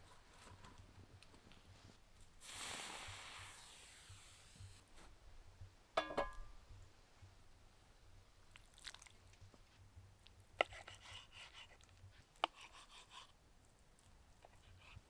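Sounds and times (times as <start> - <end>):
crunchy chewing: 8.5 - 9.4.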